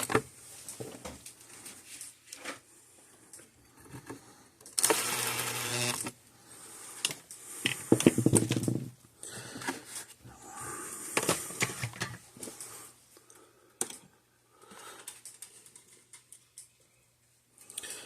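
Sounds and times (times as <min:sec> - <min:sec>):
small plastic parts clicking and rustling: 0:07.0 - 0:09.0, 0:14.8 - 0:16.8.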